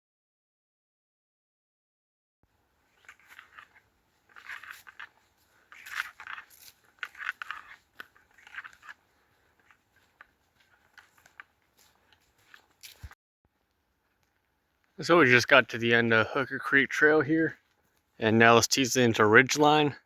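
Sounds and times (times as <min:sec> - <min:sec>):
footsteps crunching on forest trail: 0:02.5 - 0:13.2, 0:17.6 - 0:18.2.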